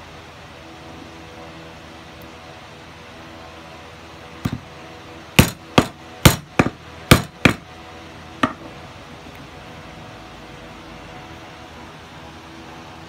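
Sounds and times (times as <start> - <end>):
hammer striking rivet tool: 4.4 - 4.6, 5.4 - 7.6, 8.4 - 8.6.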